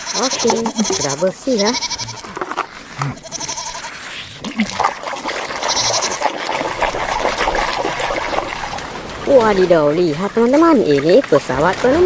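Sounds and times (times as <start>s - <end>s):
wavering bleat-like call: 0.0s - 2.4s, 3.0s - 4.1s, 5.6s - 6.3s
running water splashing: 0.0s - 12.0s.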